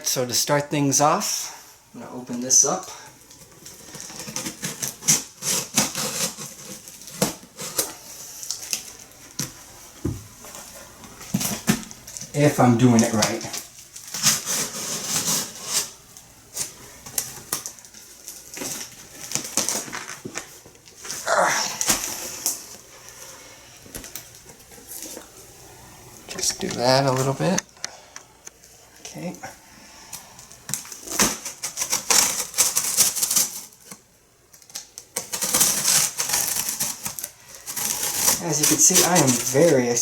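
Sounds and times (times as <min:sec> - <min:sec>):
cardboard box crackling and rustling: 0:34.7 - 0:40.0.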